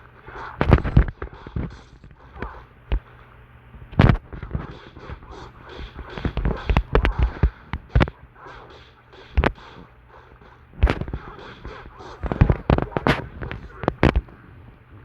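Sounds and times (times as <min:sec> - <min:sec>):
sharp thumps and knocks: 0:04.0 - 0:08.1.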